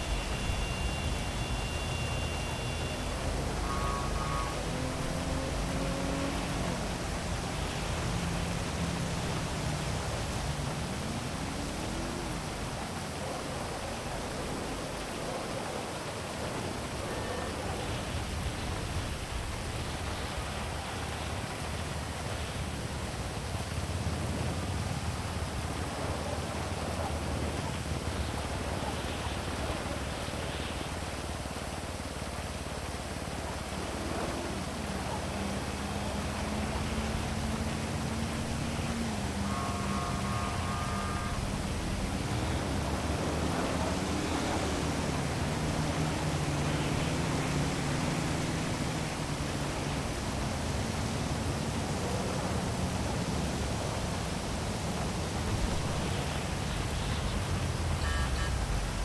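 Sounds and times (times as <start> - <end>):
engine note rising: 0.0 - 13.1, 33.6 - 59.0
heavy rain hissing: 0.0 - 59.0
low traffic rumble: 0.0 - 59.0.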